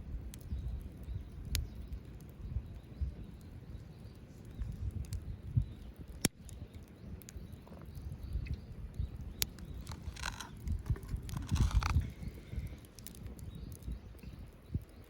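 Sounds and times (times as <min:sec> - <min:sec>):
wood fire crackling: 0:00.0 - 0:15.0
sharp fire pops: 0:04.5 - 0:15.0
scratchy rustle: 0:09.8 - 0:12.2.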